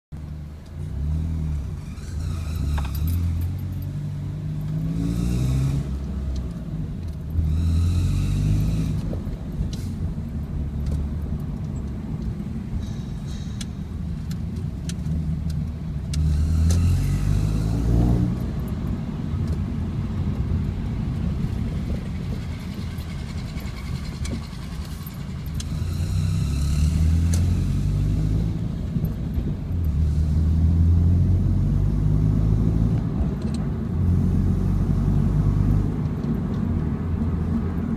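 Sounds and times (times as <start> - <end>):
car engine running at low revs: 0.1 - 37.9
road repair machinery: 12.2 - 15.1, 20.9 - 30.5.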